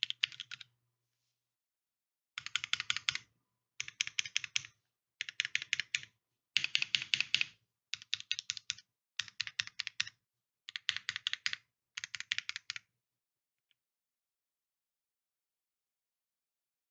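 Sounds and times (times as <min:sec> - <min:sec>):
mechanical keyboard typing: 0:00.0 - 0:00.7, 0:02.4 - 0:10.1, 0:10.7 - 0:12.8.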